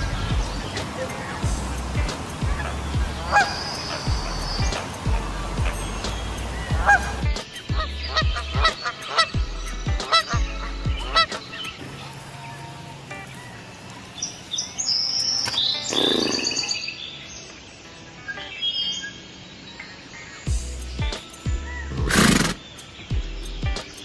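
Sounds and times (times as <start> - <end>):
music with steady bass beat: 0.0 - 11.6, 20.5 - 22.2, 22.8 - 24.0
geese honking: 1.1 - 12.2.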